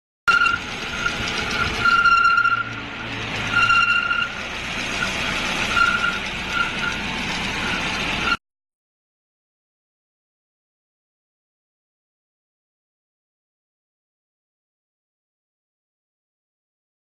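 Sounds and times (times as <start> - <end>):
car engine running: 0.3 - 8.4
high squeal: 0.3 - 8.4.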